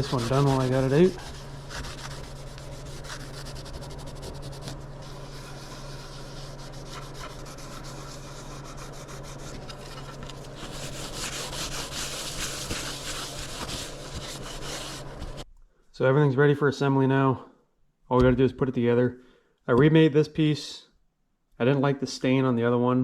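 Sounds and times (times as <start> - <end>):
hand rubbing on wood: 0.0 - 15.4
low hum: 0.0 - 15.6.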